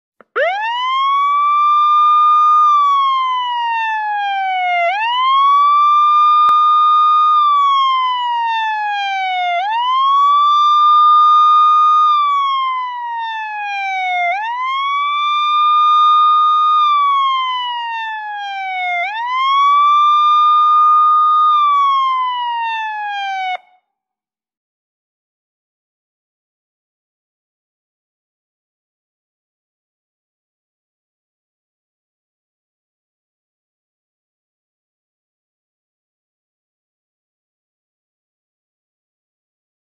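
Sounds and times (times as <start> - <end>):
police siren wailing: 0.2 - 23.8.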